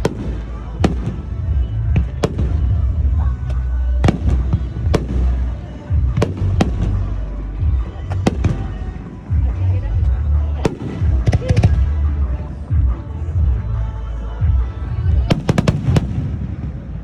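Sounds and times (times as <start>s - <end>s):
firework bangs: 0.0s - 3.4s, 4.0s - 9.6s, 10.6s - 11.9s, 15.2s - 17.0s.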